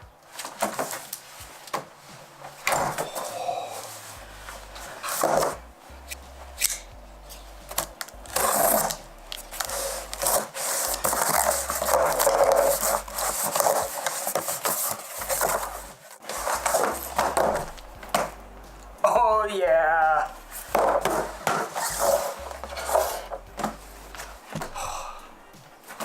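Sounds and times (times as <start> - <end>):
scraping and rubbing of packaging: 0.3 - 6.2, 7.6 - 18.3, 20.4 - 24.6.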